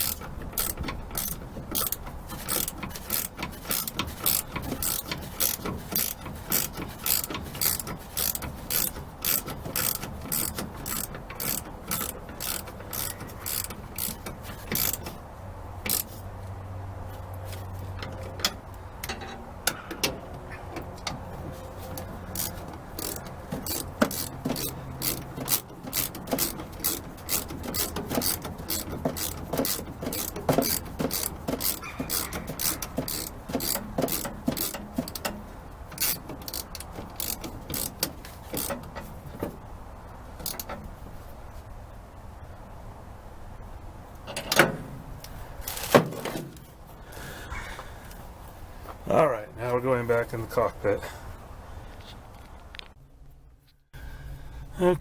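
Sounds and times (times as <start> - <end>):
ratchet wrench clicking: 0.0 - 15.2, 15.8 - 16.2, 21.9 - 39.0, 40.4 - 40.8.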